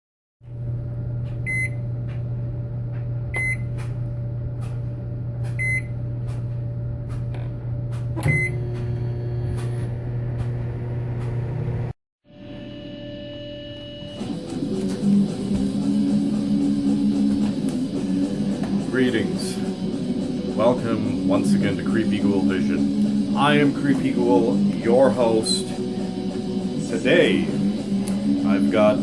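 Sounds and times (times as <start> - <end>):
microwave oven humming: 0.4 - 29.0
microwave click: 7.9 - 11.8.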